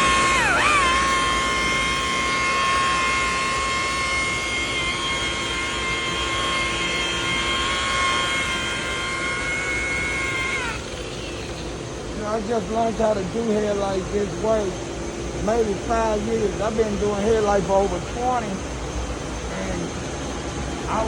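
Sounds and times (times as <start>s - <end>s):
electric sander whining: 0.0s - 14.7s.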